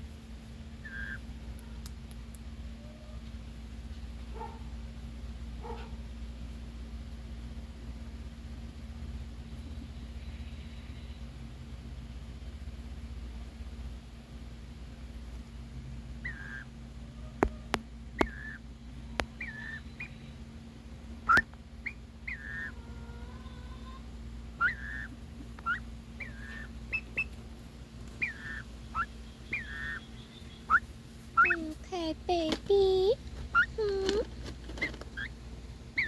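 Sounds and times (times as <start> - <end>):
turkeys chirping and peeping: 0.8 - 1.3, 16.2 - 20.6, 21.2 - 31.7, 33.4 - 36.0.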